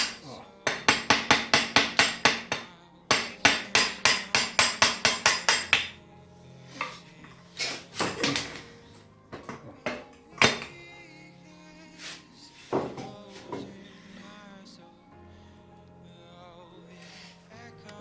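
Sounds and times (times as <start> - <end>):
rapid hammer blows on metal: 0.0 - 6.0.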